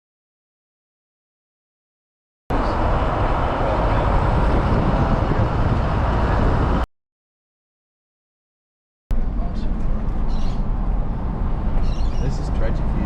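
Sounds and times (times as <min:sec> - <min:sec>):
road and wind noise from vehicle: 0:02.5 - 0:06.9, 0:09.1 - 0:13.0.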